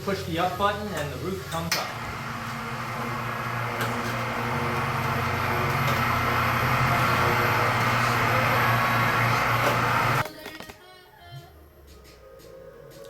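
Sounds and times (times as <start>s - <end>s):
electric hoist motor humming: 0.9s - 10.2s.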